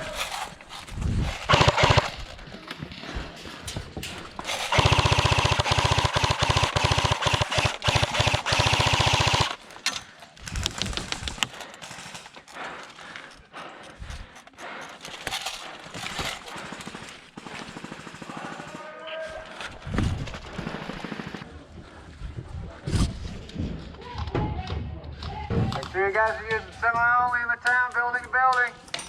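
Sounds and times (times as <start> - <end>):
airsoft rifle firing bursts: 1.2 - 2.4, 4.4 - 9.8, 16.2 - 18.8.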